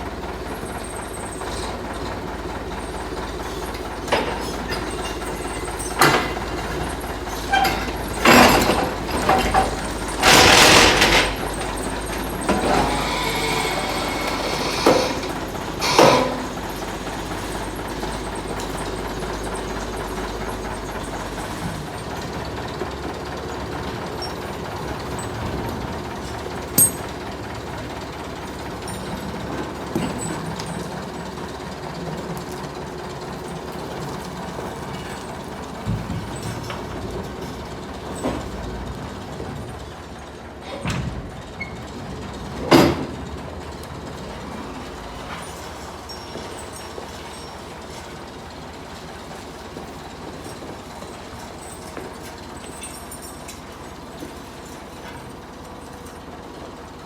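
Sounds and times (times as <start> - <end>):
tractor engine running: 0.0 - 57.0
metallic knocks and clanks: 4.0 - 20.2, 26.7 - 27.2.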